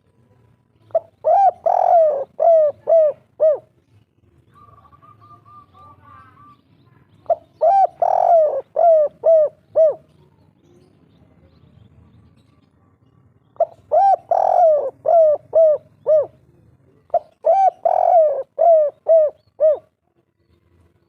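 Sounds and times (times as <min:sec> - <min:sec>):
dove cooing: 0:00.9 - 0:03.7, 0:04.5 - 0:06.6, 0:07.2 - 0:10.2, 0:13.6 - 0:16.5, 0:17.1 - 0:20.0.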